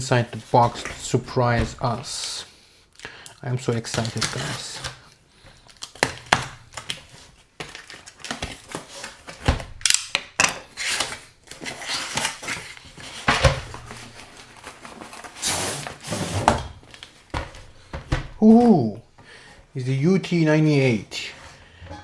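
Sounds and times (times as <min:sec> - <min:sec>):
cardboard rustling and scraping: 0:00.0 - 0:02.3, 0:10.8 - 0:18.6.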